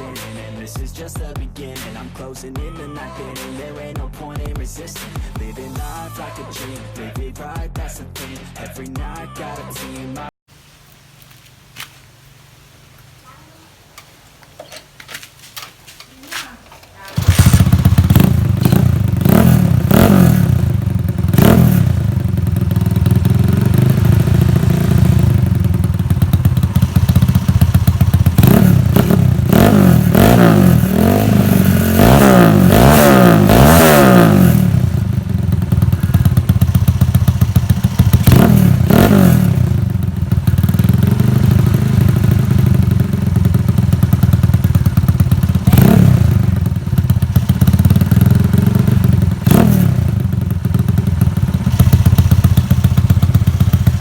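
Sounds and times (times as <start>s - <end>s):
motorcycle engine idling and revving: 13.1s - 54.0s.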